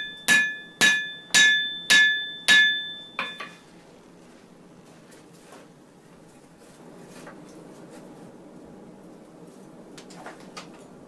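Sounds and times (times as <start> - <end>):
hammer blows on anvil ringing: 0.0 - 3.6.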